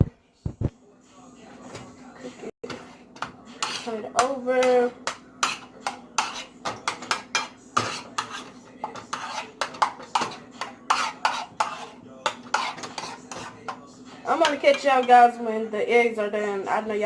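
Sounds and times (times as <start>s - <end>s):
spoon scraping a pan: 2.6s - 15.3s.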